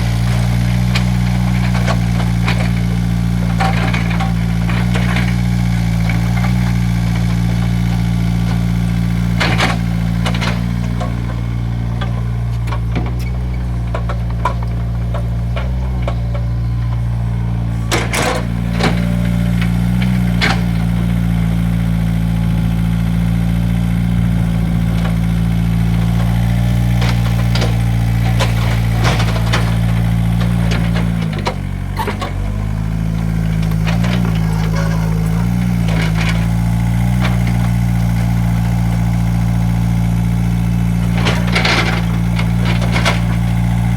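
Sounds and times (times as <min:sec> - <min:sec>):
excavator diesel engine running: 0:00.0 - 0:43.9
machine knocks and clanks: 0:24.9 - 0:38.1.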